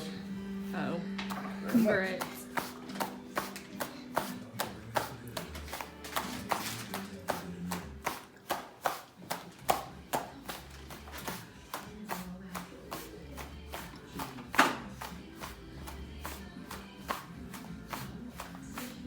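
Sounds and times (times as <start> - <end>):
music with clapping beat: 2.2 - 10.6.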